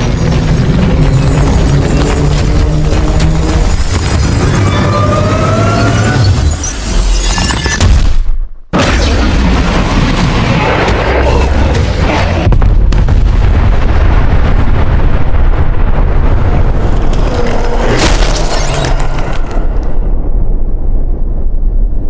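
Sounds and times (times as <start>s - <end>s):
deep booming rumble: 8.0s - 22.0s.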